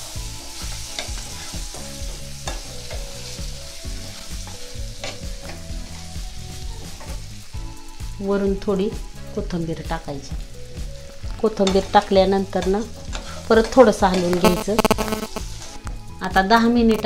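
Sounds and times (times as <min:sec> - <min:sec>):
food sizzling in pan: 0:00.0 - 0:17.0
spoon scraping and knocking pan: 0:00.5 - 0:03.4.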